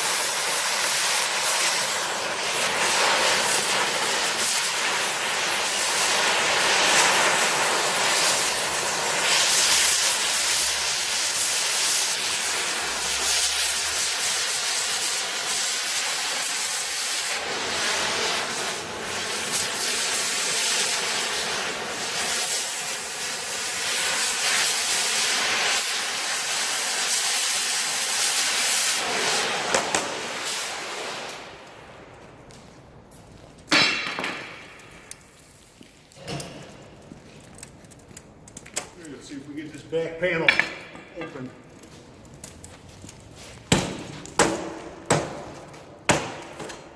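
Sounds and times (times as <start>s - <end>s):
cutting torch hissing: 0.0s - 32.2s.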